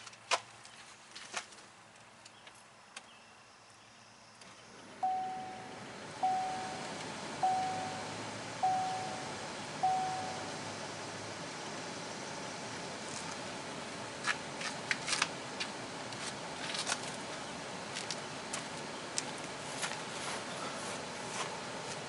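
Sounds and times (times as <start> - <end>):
steady hum: 4.7 - 22.0
dashboard chime pinging: 5.0 - 10.6.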